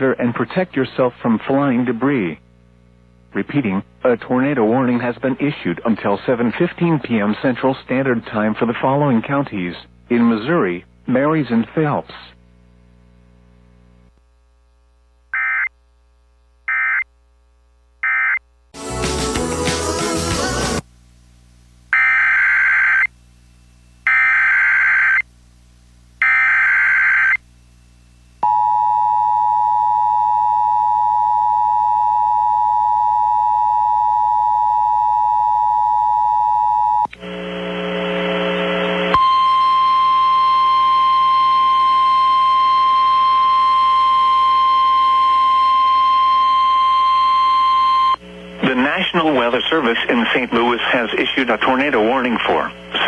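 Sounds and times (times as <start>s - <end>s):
radio hiss and hum: 0.0s - 15.1s, 36.4s - 53.0s
steady weather radio alert tone: 39.0s - 53.0s.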